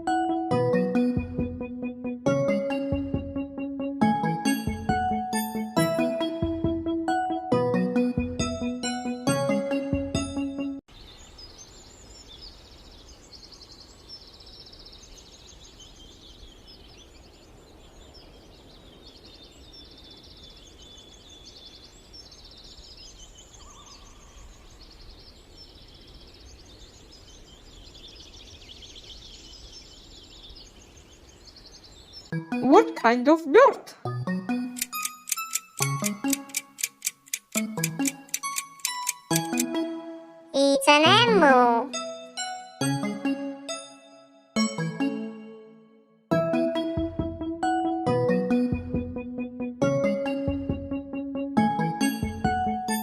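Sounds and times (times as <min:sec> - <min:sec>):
light background music: 0:00.0 - 0:10.8, 0:32.3 - 0:53.0
sparrows chirping: 0:10.9 - 0:33.5, 0:34.9 - 0:39.6
fast steady ticking: 0:34.8 - 0:39.7.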